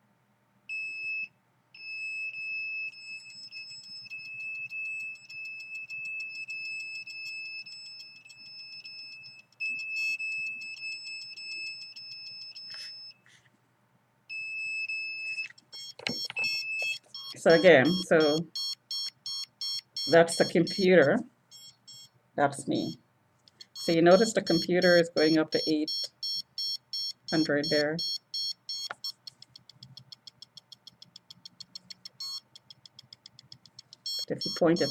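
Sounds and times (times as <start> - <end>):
high electronic alarm beep: 15.8 - 20.9, 23.8 - 29.2, 31.4 - 32.4, 34.1 - 34.9.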